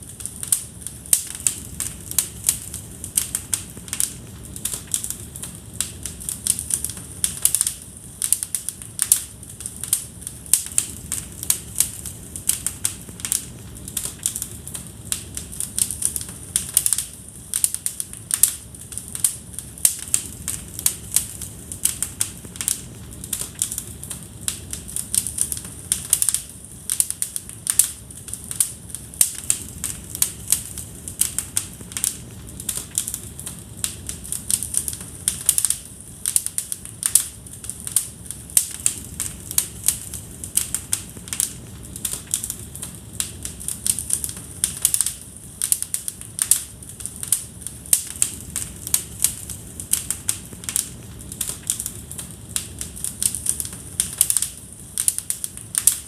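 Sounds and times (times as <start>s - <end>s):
fire crackling and popping: 0.0s - 56.0s
low rush of flames: 0.0s - 56.0s.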